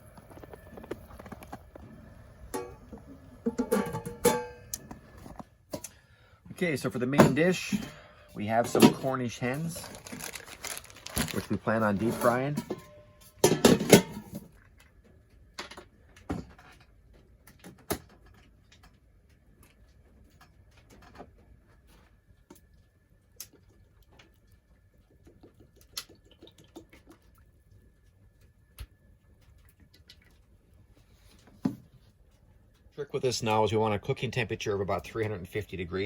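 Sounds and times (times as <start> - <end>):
cooking gear clicks and knocks: 0.0 - 6.0, 8.6 - 14.6.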